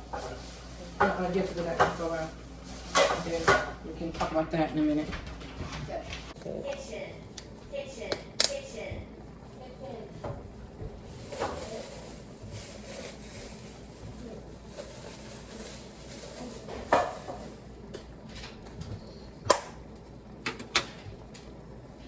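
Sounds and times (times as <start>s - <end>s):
kitchen items knocking and clicking: 0.1s - 2.2s.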